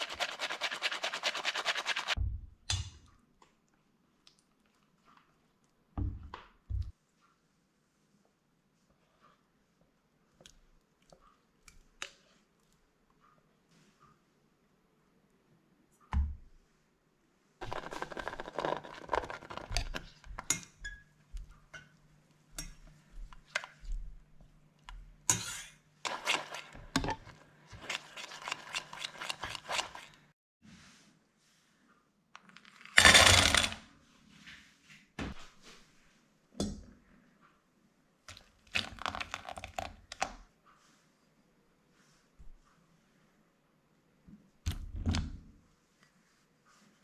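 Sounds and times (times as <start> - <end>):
utensils and bowls clinking: 25.3 - 30.2.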